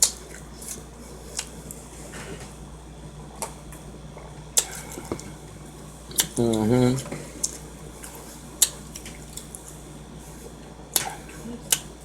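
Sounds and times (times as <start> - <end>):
person chewing with wet smacks: 0.0 - 1.8, 3.4 - 5.4, 6.1 - 9.8, 10.9 - 12.0
faint steady hum: 0.0 - 12.0.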